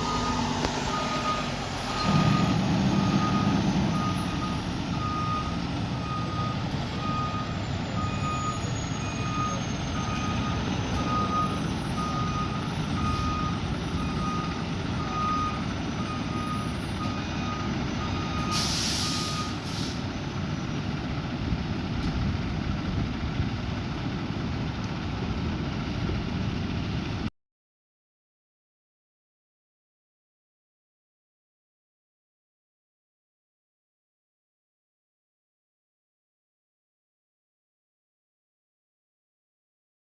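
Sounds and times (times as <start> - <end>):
backup alarm beeping: 0.0 - 19.6
truck engine running: 0.0 - 27.3
air brakes hissing: 18.4 - 20.1.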